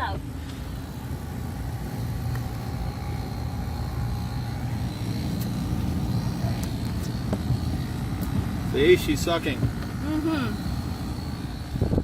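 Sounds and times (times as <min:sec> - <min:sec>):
faint steady hum: 0:00.0 - 0:12.0
low mechanical rumble: 0:00.0 - 0:12.0.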